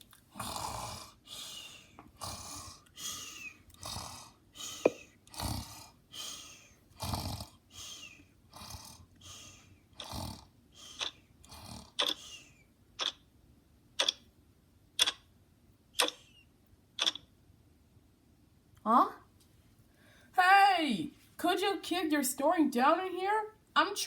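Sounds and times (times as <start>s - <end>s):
snoring: 0.3s - 1.2s, 2.2s - 6.0s, 7.0s - 10.5s, 11.5s - 12.2s.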